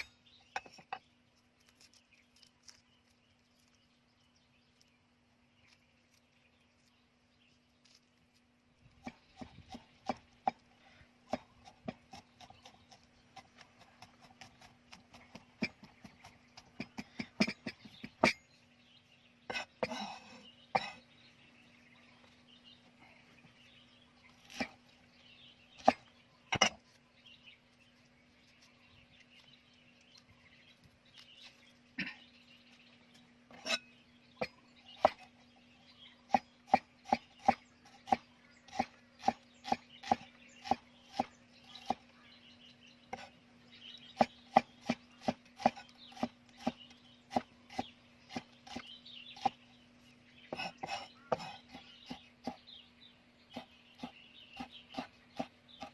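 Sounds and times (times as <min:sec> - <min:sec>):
knife chopping on wood: 0:09.0 - 0:10.6, 0:11.2 - 0:18.4, 0:24.4 - 0:24.8, 0:25.8 - 0:26.8, 0:36.3 - 0:42.1, 0:44.1 - 0:49.6, 0:50.5 - 0:52.6, 0:53.5 - 0:55.9.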